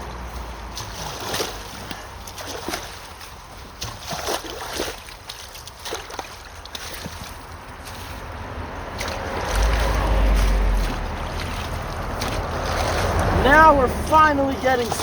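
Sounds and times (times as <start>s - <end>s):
water splashing and sloshing: 0.0s - 15.0s
steady low rumble: 7.6s - 15.0s.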